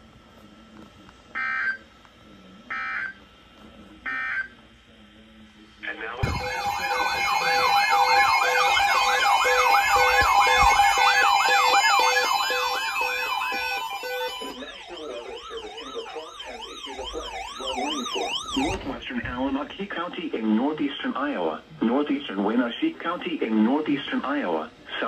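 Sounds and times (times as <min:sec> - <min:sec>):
pulsing low beep: 0:06.2 - 0:18.8
electronic siren sweeping: 0:06.2 - 0:19.0.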